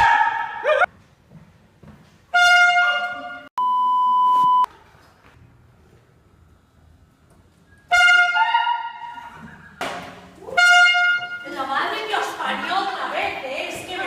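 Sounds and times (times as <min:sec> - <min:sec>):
prank horn blasts: 0:02.3 - 0:03.5, 0:07.9 - 0:09.1, 0:10.6 - 0:11.4
censor bleep: 0:03.6 - 0:04.7.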